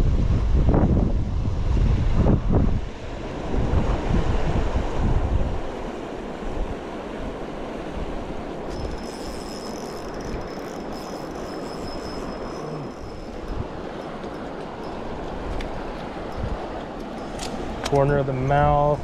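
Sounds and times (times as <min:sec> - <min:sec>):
wind buffeting microphone: 0:00.0 - 0:19.0
river water rushing: 0:02.9 - 0:18.5
faint high whine: 0:08.7 - 0:16.5.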